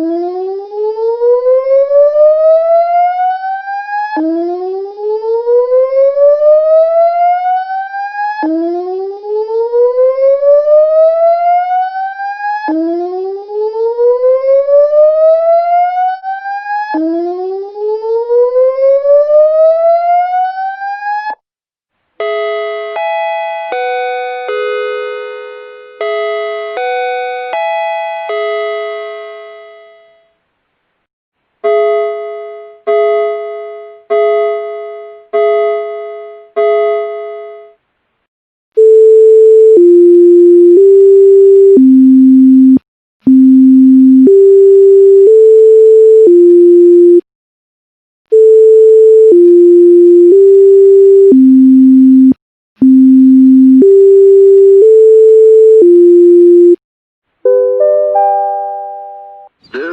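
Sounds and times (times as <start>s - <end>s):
rising siren wail: 0.0s - 21.4s.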